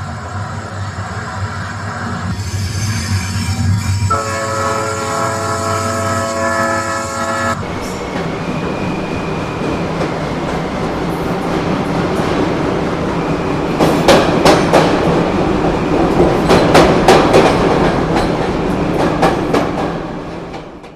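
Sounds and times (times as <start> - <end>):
diesel train engine drone: 0.0 - 20.5
wheels clacking over rail joints: 13.6 - 20.9.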